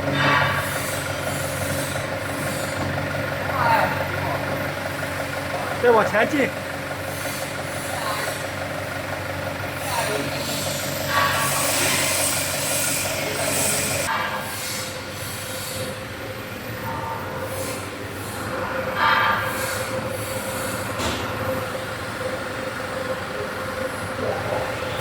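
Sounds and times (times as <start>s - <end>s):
forklift engine running: 0.0s - 25.0s
heavy metal parts scraping: 10.4s - 16.0s
high metallic squeals: 10.4s - 16.0s.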